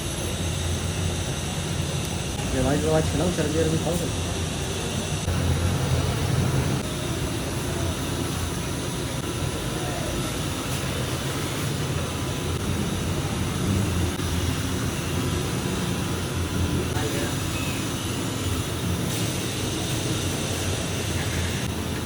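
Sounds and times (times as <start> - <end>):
faint voices: 6.8 - 11.2
steady low roar: 11.8 - 17.1.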